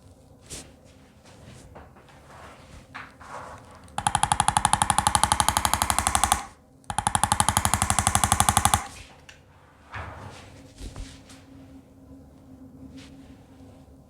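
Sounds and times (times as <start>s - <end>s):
rapid mechanical taps: 3.9s - 9.0s.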